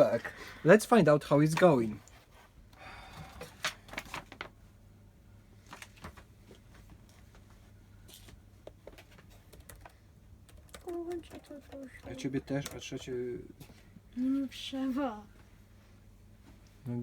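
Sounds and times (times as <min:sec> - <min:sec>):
small parts clicking and tapping: 0:08.1 - 0:13.2.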